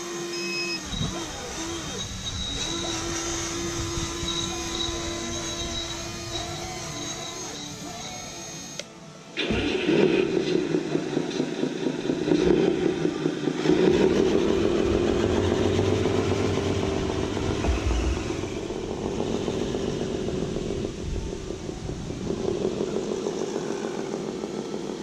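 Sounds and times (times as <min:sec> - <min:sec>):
toy truck motor running: 0:00.0 - 0:09.7
wind on microphone: 0:00.8 - 0:06.9, 0:13.7 - 0:23.3.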